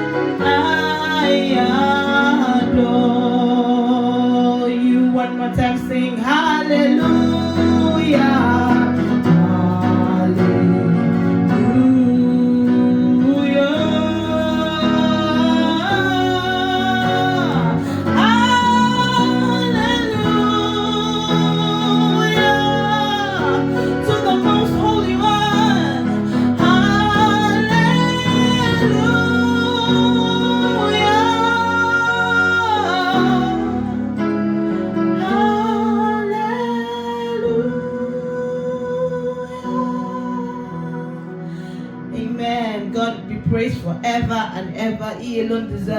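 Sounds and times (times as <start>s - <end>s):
instrumental accompaniment with guitar: 0.0s - 45.9s
person singing long held notes: 6.2s - 42.2s.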